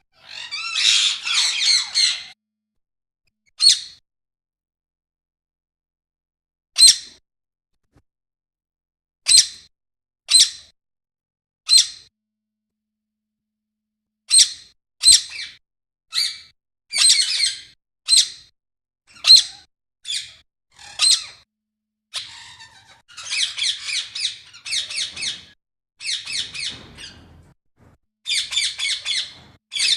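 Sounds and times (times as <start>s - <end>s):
parrots squawking: 0.1s - 2.4s, 16.1s - 18.4s, 19.1s - 21.4s, 22.1s - 27.4s, 28.3s - 29.9s.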